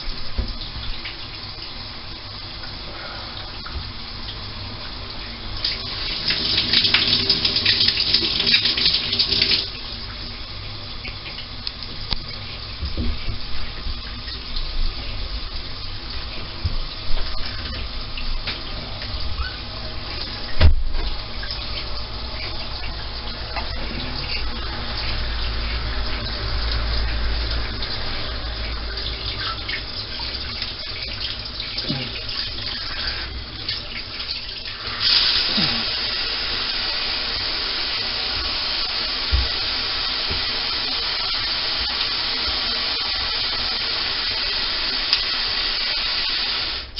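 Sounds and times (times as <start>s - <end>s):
shower head spraying water: 5.4s - 10.0s, 21.4s - 46.9s.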